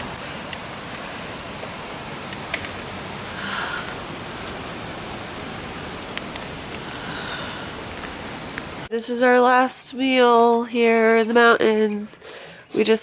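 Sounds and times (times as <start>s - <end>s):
river rapids and waterfall rushing: 0.0s - 8.9s.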